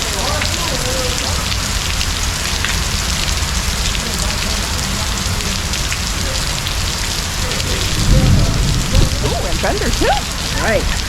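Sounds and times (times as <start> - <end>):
heavy pouring rain: 0.0 - 11.0
raindrops hitting close: 0.0 - 11.0
low rumble: 7.2 - 11.0.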